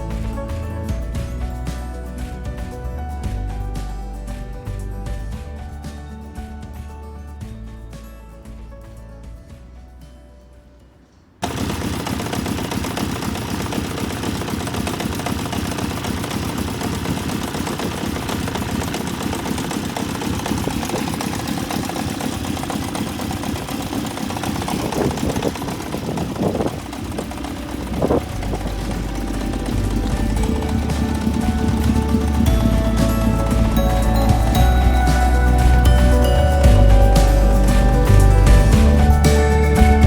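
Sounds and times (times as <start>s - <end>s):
motorcycle engine running: 0.0s - 7.9s, 11.4s - 40.0s
music: 0.0s - 11.2s, 27.5s - 40.0s.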